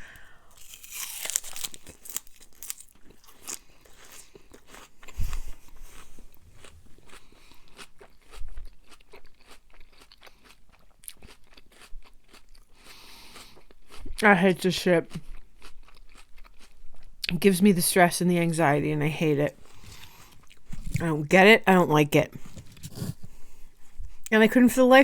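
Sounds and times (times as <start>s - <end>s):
wet chewing sounds: 0.5s - 14.2s, 15.0s - 17.3s, 19.6s - 21.0s.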